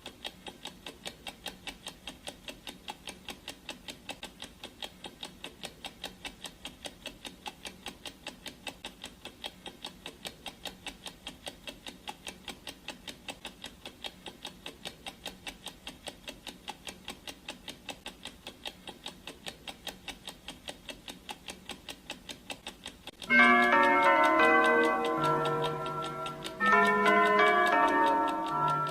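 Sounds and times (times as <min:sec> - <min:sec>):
clock ticking: 0:00.0 - 0:28.9
timer alarm chime: 0:23.3 - 0:28.9.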